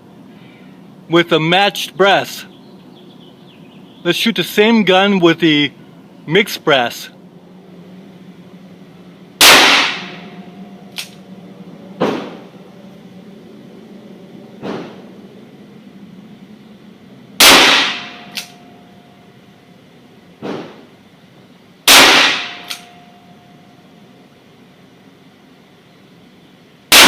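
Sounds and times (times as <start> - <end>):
faint gunshots: 9.4 - 10.3, 12.0 - 12.4, 17.4 - 18.2, 21.9 - 22.7
loud close gunshots: 9.4 - 10.4, 17.4 - 18.4, 21.9 - 22.9.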